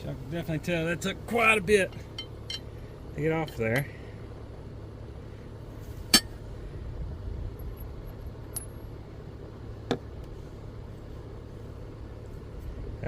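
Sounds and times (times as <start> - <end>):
metal tools clinking: 1.8 - 2.7.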